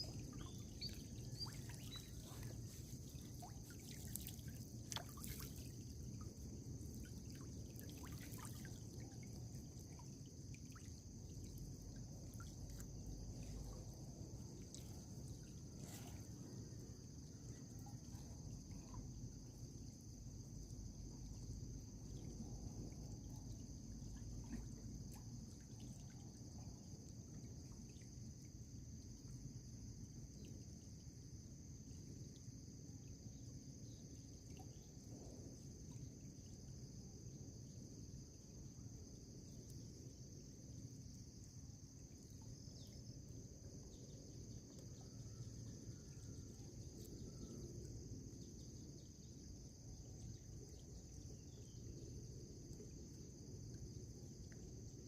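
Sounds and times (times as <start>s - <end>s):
water drips and splashes: 0.0s - 13.9s
night insects trilling: 0.0s - 55.0s.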